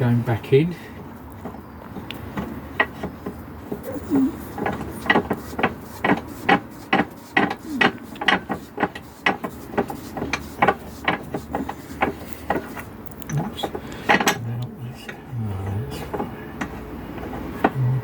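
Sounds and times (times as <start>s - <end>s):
metal parts knocking and clicking: 7.4s - 14.4s.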